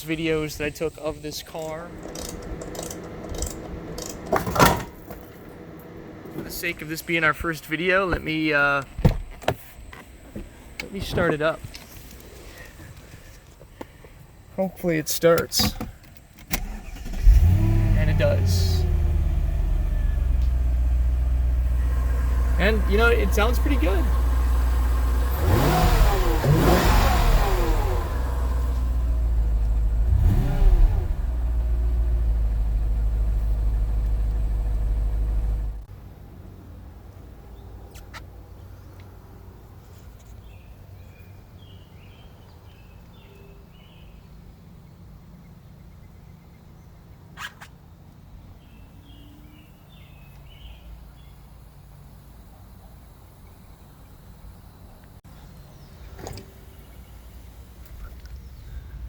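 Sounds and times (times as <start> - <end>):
car engine revving and idling: 1.1 - 7.2, 16.6 - 35.9.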